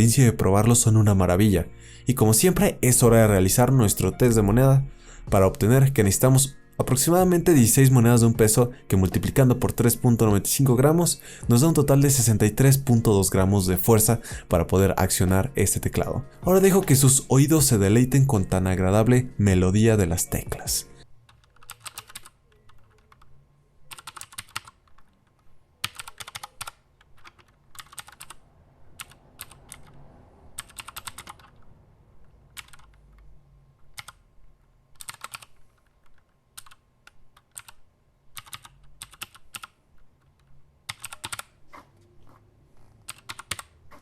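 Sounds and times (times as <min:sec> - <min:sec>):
mechanical keyboard key clicks: 0:21.3 - 0:23.3, 0:23.9 - 0:28.4, 0:30.6 - 0:31.7, 0:32.5 - 0:33.2, 0:33.8 - 0:34.2, 0:35.0 - 0:37.8, 0:38.4 - 0:41.5, 0:43.0 - 0:43.7.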